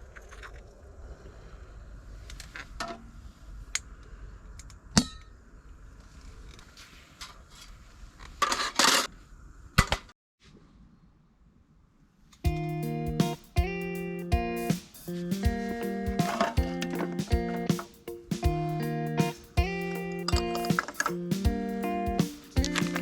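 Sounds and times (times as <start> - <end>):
rustling: 14.7 - 18.0
sharp knock: 14.7 - 21.6.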